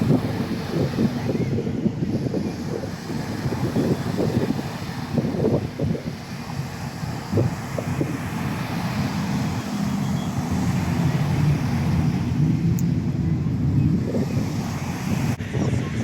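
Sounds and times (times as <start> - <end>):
wind on microphone: 0.0 - 16.0
low engine rumble: 7.5 - 16.0.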